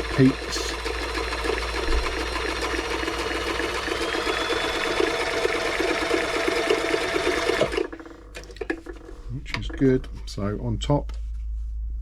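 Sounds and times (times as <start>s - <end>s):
sewing machine stitching: 0.0s - 9.6s.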